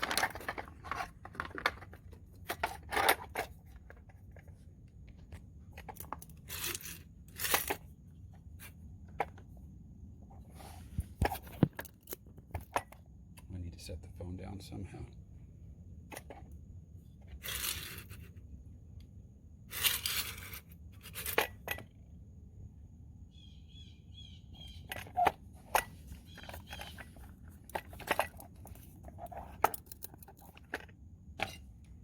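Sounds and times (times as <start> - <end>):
rustling handling noise: 0.0 - 12.9, 24.8 - 32.0.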